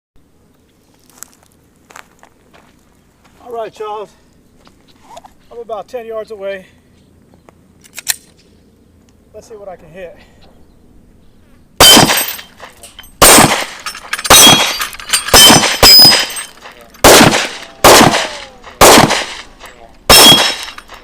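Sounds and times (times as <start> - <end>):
pistol shots: 11.8 - 12.5, 13.2 - 16.4, 17.0 - 21.0.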